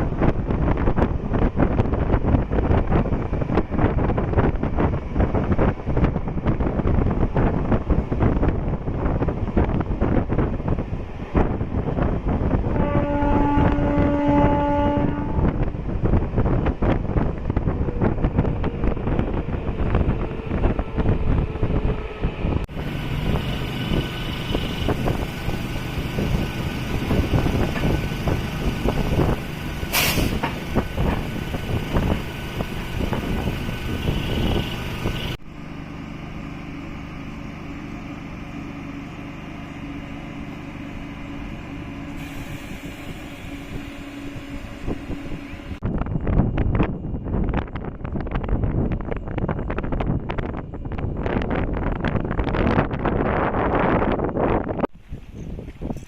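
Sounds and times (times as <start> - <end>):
train rumble: 0.0 - 56.0
train wheels rattling on rails: 15.0 - 35.4.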